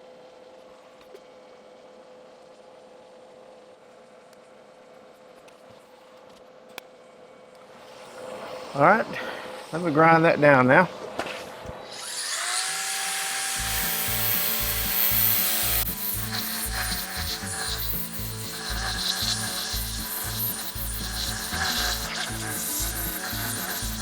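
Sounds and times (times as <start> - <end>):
electric grinder grinding metal: 11.8 - 24.0.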